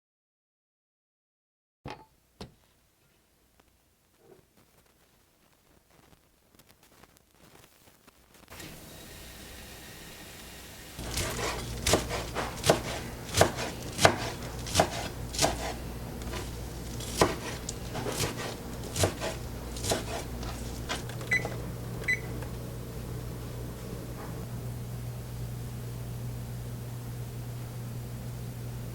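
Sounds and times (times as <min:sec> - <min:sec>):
steady low hum: 0:10.4 - 0:28.9.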